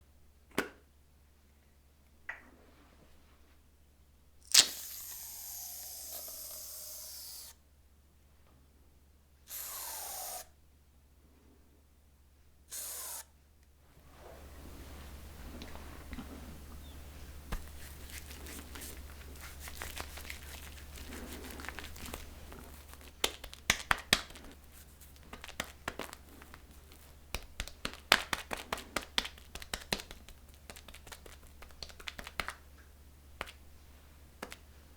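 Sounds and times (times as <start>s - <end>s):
wet squelches and pops: 4.5s - 5.4s
foamy crackle of shaving cream: 17.6s - 31.5s.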